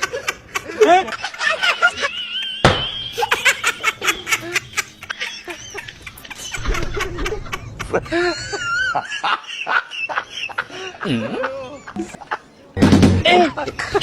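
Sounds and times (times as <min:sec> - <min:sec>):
people laughing: 0:00.0 - 0:14.0.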